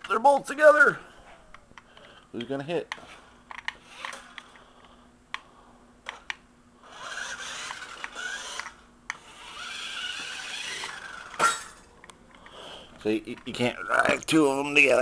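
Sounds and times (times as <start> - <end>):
toy car motors whirring: 3.6 - 4.6, 6.1 - 11.9.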